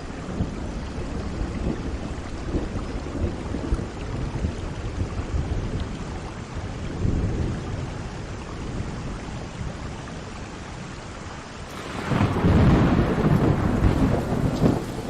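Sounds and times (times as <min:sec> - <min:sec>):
heavy rain: 0:00.0 - 0:15.0
thunder rumbling: 0:11.7 - 0:15.0.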